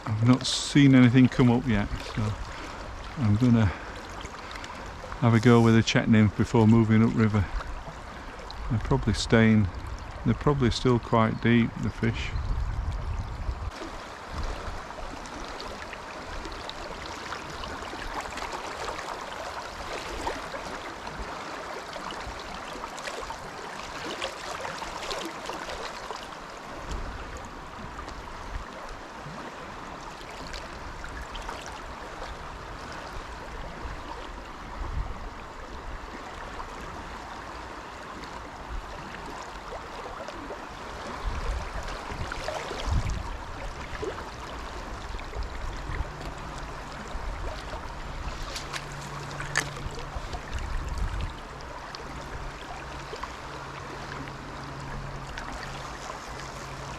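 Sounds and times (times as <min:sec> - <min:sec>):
river water rushing over stones: 0:13.7 - 0:56.9.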